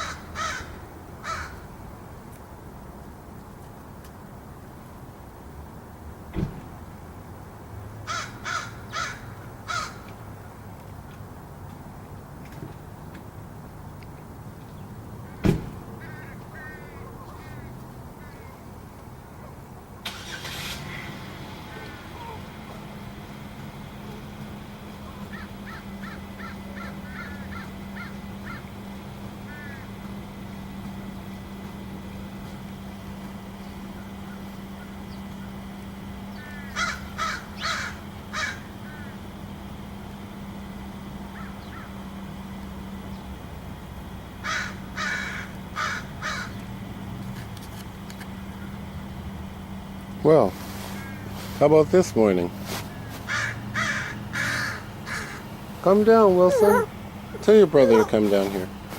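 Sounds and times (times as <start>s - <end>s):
crow cawing: 0.0s - 1.6s, 8.1s - 10.1s, 16.0s - 18.5s, 25.3s - 28.6s, 29.5s - 29.9s, 36.4s - 39.2s, 44.4s - 46.6s, 51.0s - 51.3s, 53.2s - 55.5s
faint soft calls: 52.7s - 58.9s.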